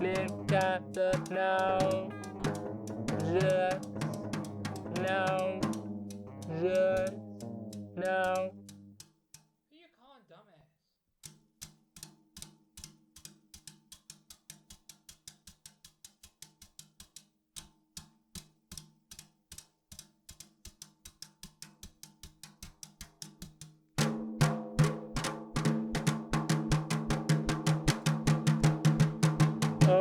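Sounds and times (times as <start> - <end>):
percussive sample hits: 0.0 - 7.9
drum kit playing: 0.0 - 8.5, 24.0 - 30.0.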